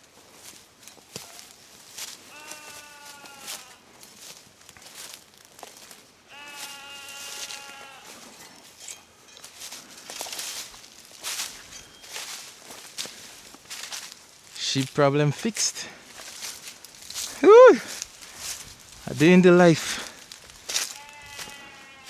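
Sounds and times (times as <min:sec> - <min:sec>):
footsteps in dry grass: 0:00.0 - 0:22.0
sheep bleating: 0:02.2 - 0:03.8, 0:06.3 - 0:08.3, 0:20.7 - 0:22.0.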